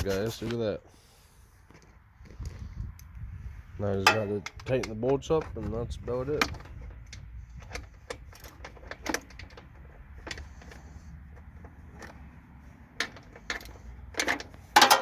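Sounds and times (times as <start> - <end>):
tool clicking on bolts: 13.0 - 15.0.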